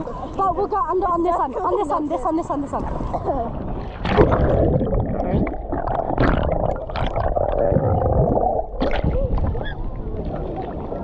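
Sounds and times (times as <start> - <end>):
underwater surf rumbling: 2.8 - 11.0
water splash: 3.9 - 11.0.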